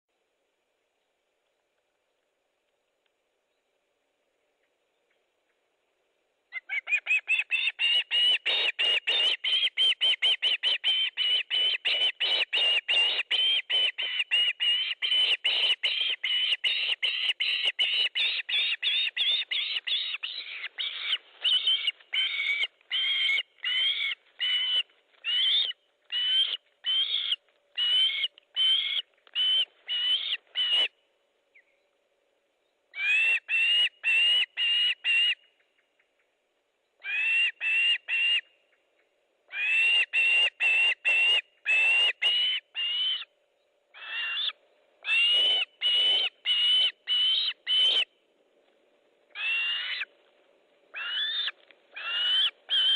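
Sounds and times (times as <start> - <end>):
osprey whistled calls: 6.5 - 31.8, 33.0 - 35.8, 39.5 - 43.3, 44.0 - 48.1, 49.3 - 50.1, 50.9 - 52.9.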